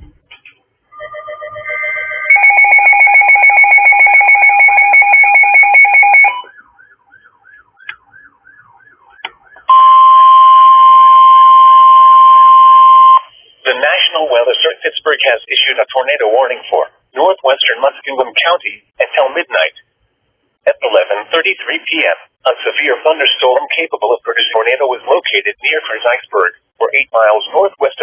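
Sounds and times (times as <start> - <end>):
steady alarm tone: 0.9 - 6.9, 9.7 - 13.3
data tones: 1.0 - 6.5, 9.7 - 13.3.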